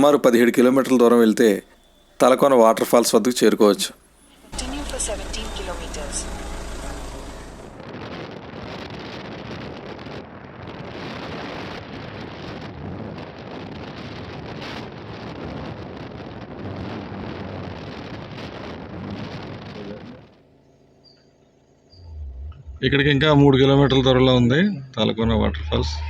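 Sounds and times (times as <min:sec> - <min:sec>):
moving car road noise: 0:04.0 - 0:08.0.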